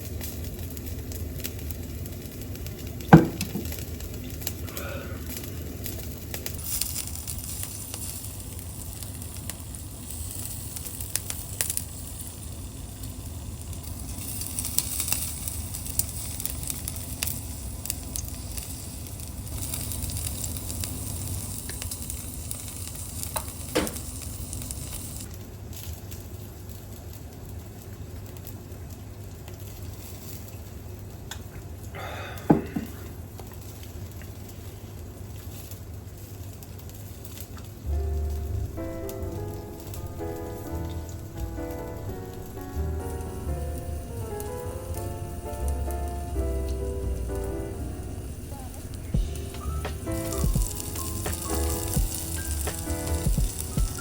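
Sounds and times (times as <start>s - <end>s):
skewers sizzling on grill: 0.0s - 54.0s
sharp knocks: 3.2s - 3.8s.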